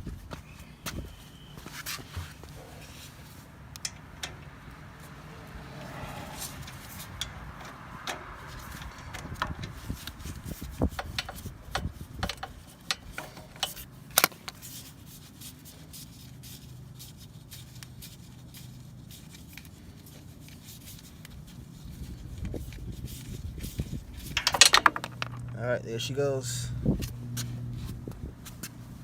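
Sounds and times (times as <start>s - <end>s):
metal tool clinking and scraping: 12.4s - 14.5s, 24.2s - 25.6s.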